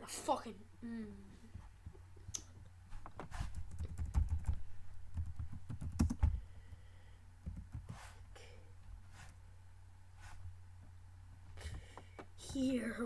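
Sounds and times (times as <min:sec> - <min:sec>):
laptop keyboard typing: 0:03.5 - 0:06.4, 0:07.4 - 0:07.9.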